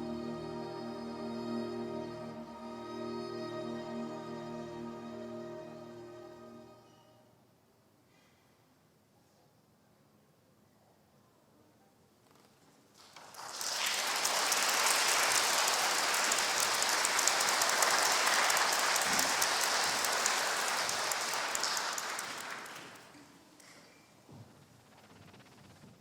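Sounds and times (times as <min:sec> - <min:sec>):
audience applauding: 0:13.0 - 0:23.2.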